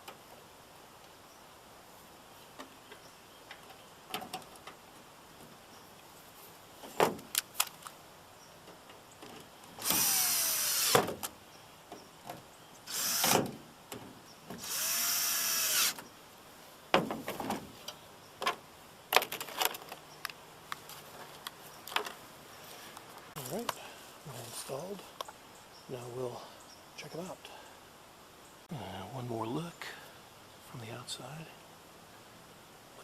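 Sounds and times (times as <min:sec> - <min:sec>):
cordless drill motor whine: 0:09.8 - 0:11.0, 0:12.9 - 0:13.4, 0:14.6 - 0:16.0
handling clicks and knocks: 0:17.0 - 0:22.2.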